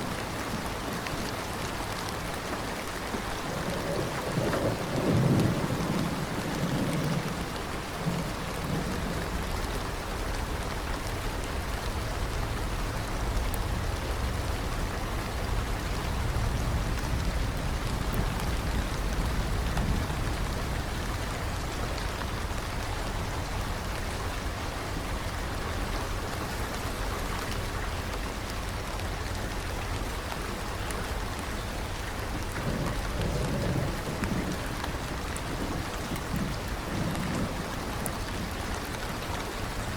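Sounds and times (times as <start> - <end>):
heavy rain falling: 0.0 - 39.9
low thunder rumbling: 0.4 - 39.9.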